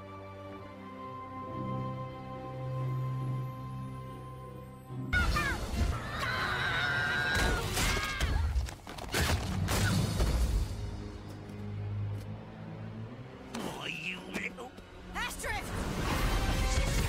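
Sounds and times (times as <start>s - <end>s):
soft cartoon music: 0.0s - 7.9s.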